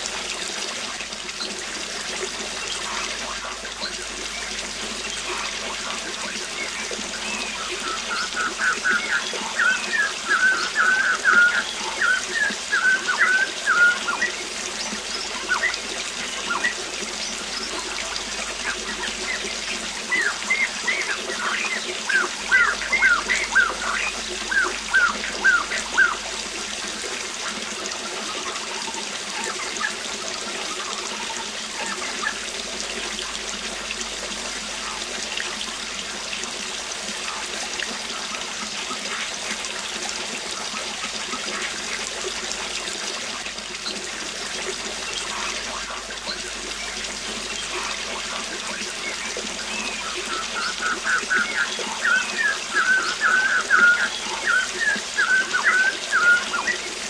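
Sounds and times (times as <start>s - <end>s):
waterfall rushing: 0.0s - 57.0s
birds calling: 1.3s - 39.4s, 43.8s - 57.0s
bird repeated calls: 2.6s - 26.4s, 45.0s - 57.0s.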